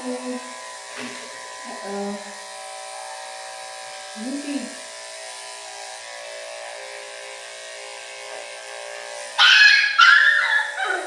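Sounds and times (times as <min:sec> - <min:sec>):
electric clippers buzzing: 0:00.0 - 0:11.0
person talking: 0:04.2 - 0:04.8
puppy yelping: 0:09.4 - 0:11.0.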